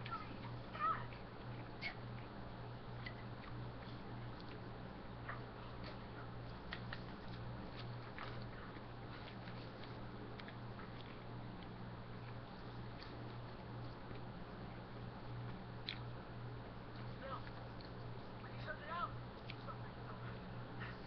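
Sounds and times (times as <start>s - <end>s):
steady low hum: 0.0s - 21.0s
person chewing food: 0.4s - 18.4s
wet mouth clicks and smacks: 15.8s - 16.1s.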